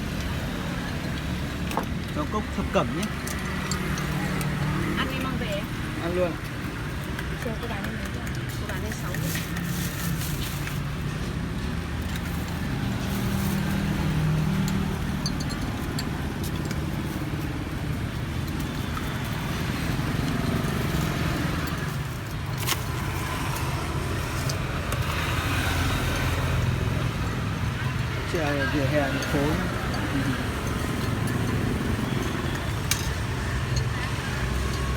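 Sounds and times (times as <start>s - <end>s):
car engines running: 0.0s - 34.9s
low traffic hum: 0.0s - 34.9s
vehicle passing: 22.8s - 34.9s.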